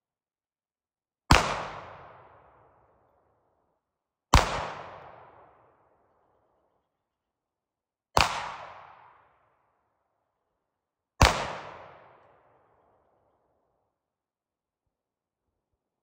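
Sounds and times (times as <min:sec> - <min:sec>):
pistol shots with echo: 0:01.3 - 0:03.1, 0:04.3 - 0:05.9, 0:08.2 - 0:09.5, 0:11.2 - 0:12.9.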